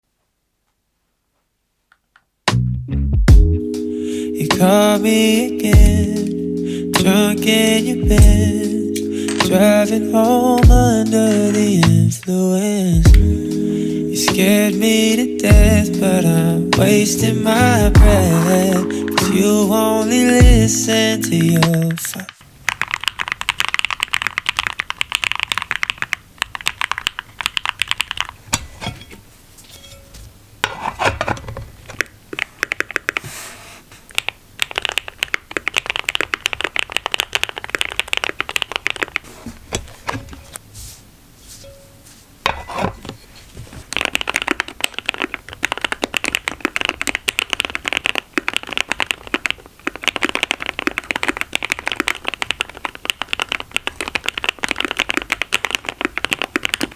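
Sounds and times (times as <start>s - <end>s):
mechanical keyboard typing: 9.0s - 12.4s, 18.0s - 28.4s, 31.9s - 33.3s, 34.1s - 39.3s, 43.8s - 56.9s.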